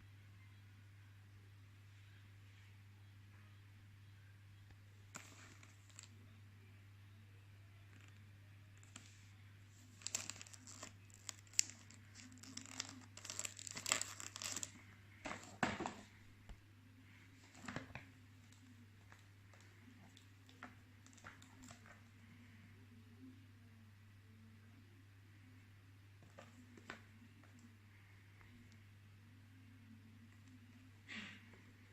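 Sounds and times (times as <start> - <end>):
packaging tearing and crinkling: 9.9 - 14.8.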